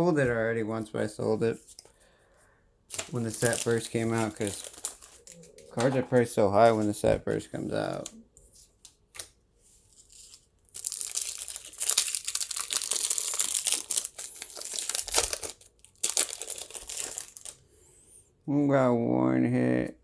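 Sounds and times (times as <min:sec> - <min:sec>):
foil wrapper crinkling and tearing: 0:02.9 - 0:05.9, 0:09.9 - 0:17.6.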